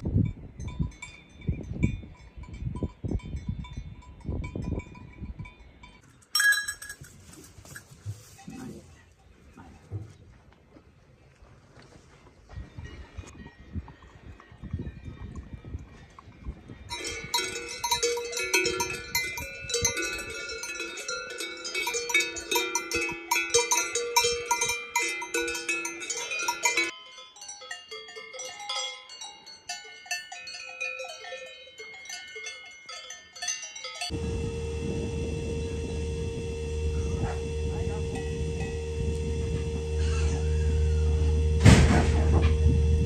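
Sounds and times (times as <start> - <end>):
cowbells clanking: 0.5 - 8.9, 16.0 - 34.2
low hum with held tone: 34.1 - 43.0.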